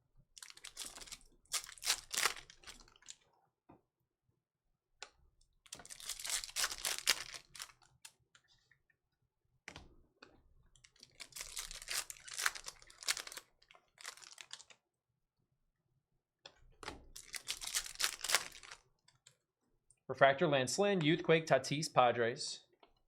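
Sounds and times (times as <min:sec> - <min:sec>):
foil packs tearing and crinkling: 0:00.4 - 0:03.2, 0:05.8 - 0:07.8, 0:11.0 - 0:14.7, 0:17.2 - 0:18.8.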